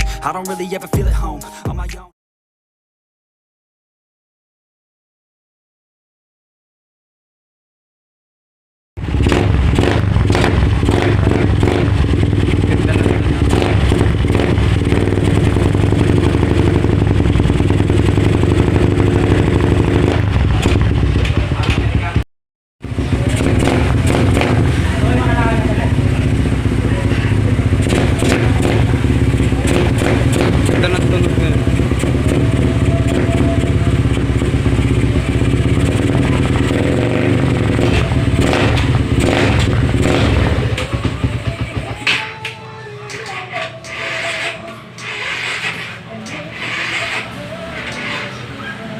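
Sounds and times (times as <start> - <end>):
motorcycle exhaust running steadily: 9.0 - 22.2, 22.8 - 42.0.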